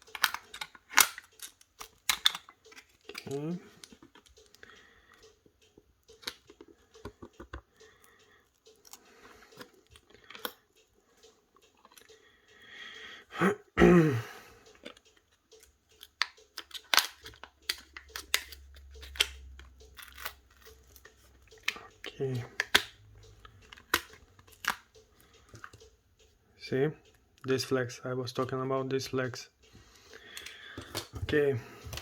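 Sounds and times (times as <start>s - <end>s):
plastic cover clicking and snapping: 0.0s - 4.8s, 6.0s - 7.7s, 14.7s - 25.8s, 30.2s - 32.0s.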